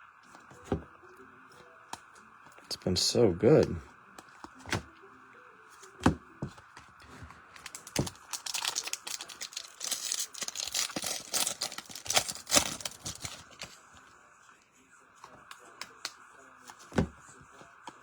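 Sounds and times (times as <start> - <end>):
trading cards being handled: 5.8 - 14.0, 15.2 - 18.0
foil wrapper crinkling: 7.6 - 13.9.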